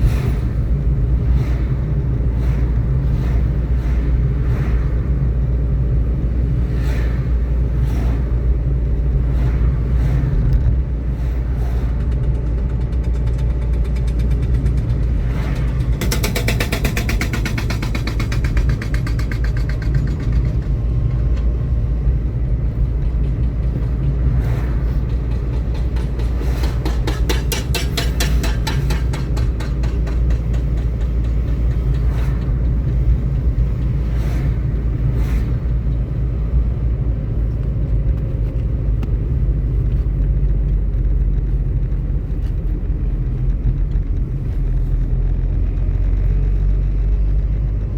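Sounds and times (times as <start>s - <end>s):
vehicle engine and tyres rumbling: 0.0s - 47.9s
rapid rattling: 11.9s - 21.4s, 22.7s - 34.0s.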